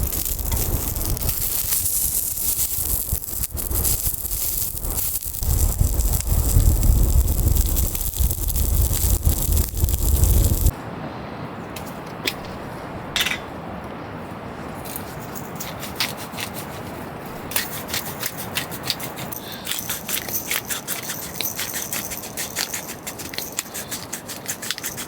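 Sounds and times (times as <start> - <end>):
wood stove crackling and popping: 0.0 - 10.7, 17.4 - 25.0.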